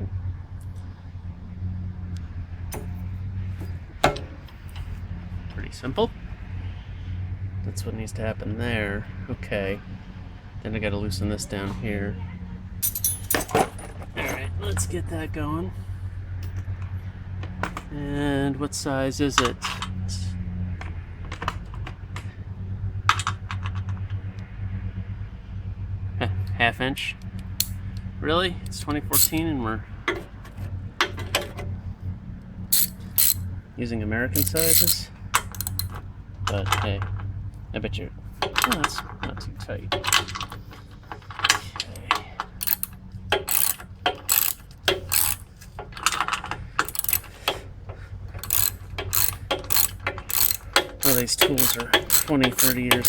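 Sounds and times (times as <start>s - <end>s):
metal wrenches clicking and clinking: 2.7s - 5.9s, 12.8s - 15.0s, 27.2s - 31.9s, 32.7s - 33.5s, 34.3s - 37.3s, 38.3s - 53.0s
small clicks: 27.2s - 29.4s, 32.7s - 33.5s, 34.4s - 37.6s, 38.4s - 53.0s.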